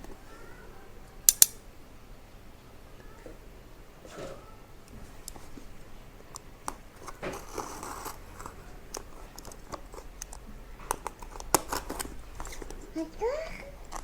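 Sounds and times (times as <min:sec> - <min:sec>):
packaging clicks and taps: 0:06.3 - 0:13.0
packaging rustling and crinkling: 0:06.7 - 0:14.0.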